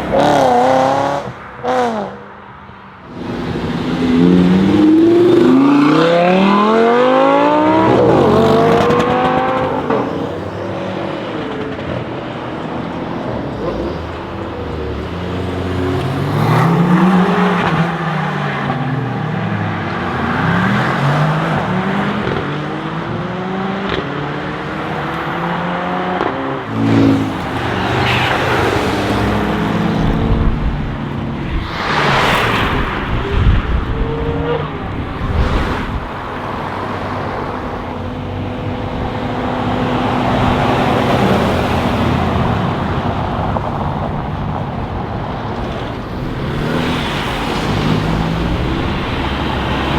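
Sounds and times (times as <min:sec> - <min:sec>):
car engine accelerating hard: 0:03.1 - 0:12.1.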